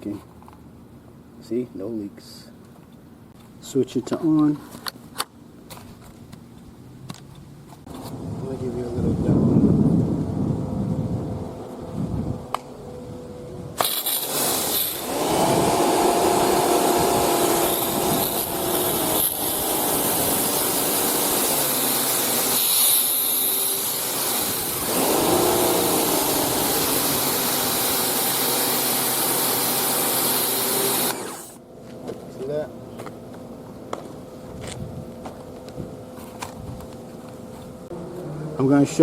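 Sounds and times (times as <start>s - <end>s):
motor and pump whine: 12.5s - 31.6s
pressure washer water jet hissing: 13.8s - 31.6s.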